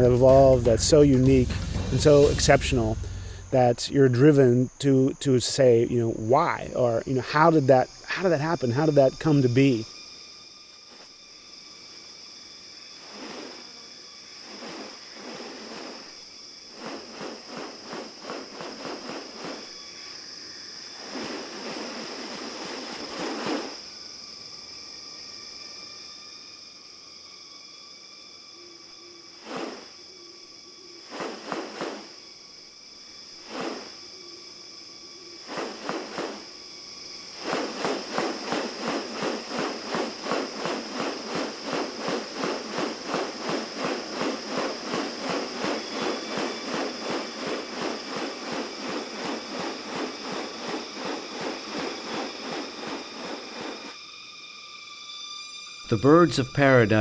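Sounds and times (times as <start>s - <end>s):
loud pulsing rhythm: 0.0s - 3.7s
high-pitched insect drone: 0.0s - 57.0s.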